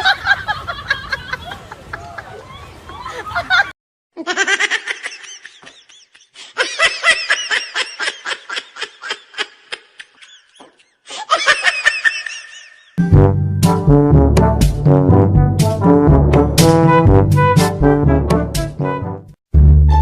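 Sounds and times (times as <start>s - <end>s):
high-pitched laughter: 0.0s - 13.0s.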